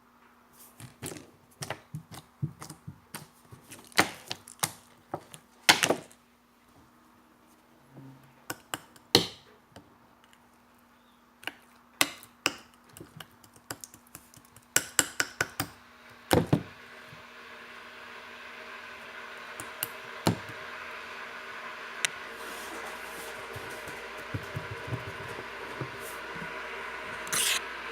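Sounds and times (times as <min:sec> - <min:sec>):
background hiss with low hum: 0:00.0 - 0:27.9
containers and tools tapping: 0:22.6 - 0:26.5.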